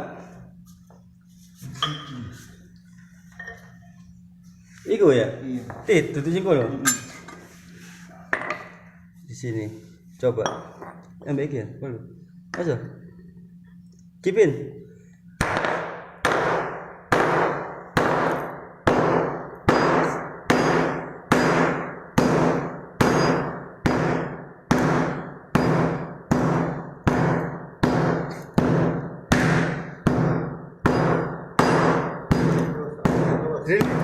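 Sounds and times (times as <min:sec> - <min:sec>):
hammer striking a chisel: 0:01.8 - 0:02.2, 0:15.4 - 0:34.0.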